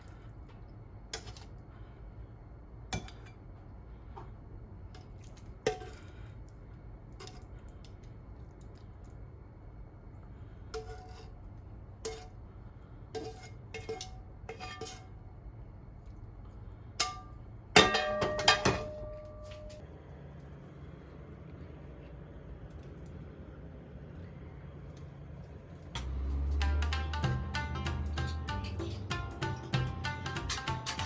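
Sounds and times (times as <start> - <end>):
utensils clinking against dishes: 17.8 - 19.8, 26.0 - 31.0.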